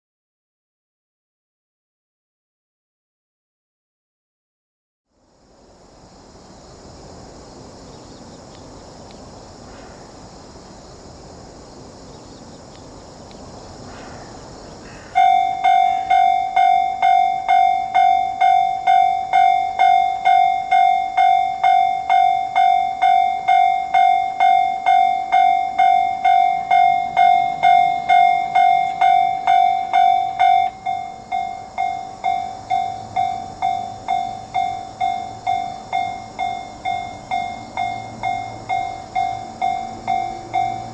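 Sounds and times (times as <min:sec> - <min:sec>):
background noise: 0:05.1 - 0:40.9
railroad crossing bell dinging: 0:14.8 - 0:40.9.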